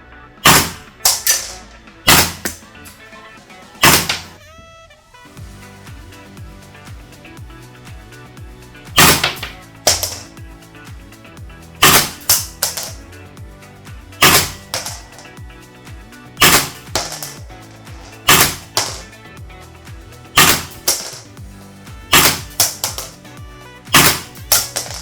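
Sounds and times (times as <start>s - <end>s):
background music: 0.0s - 25.0s
airsoft rifle shots: 0.4s - 3.0s, 3.8s - 4.4s, 9.0s - 10.3s, 11.8s - 13.0s, 14.2s - 15.3s, 16.4s - 19.1s, 20.4s - 21.3s, 22.1s - 23.2s, 23.9s - 25.0s.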